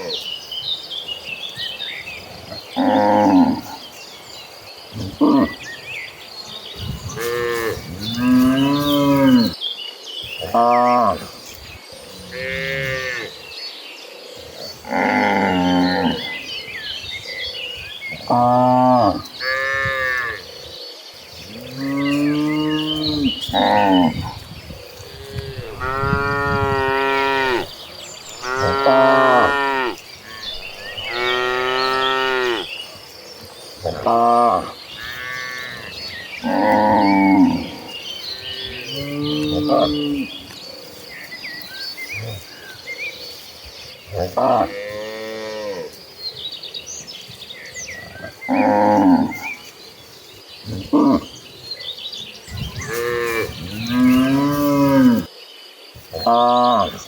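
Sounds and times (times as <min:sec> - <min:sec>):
cattle mooing: 0:25.2 - 0:27.7, 0:28.3 - 0:32.7.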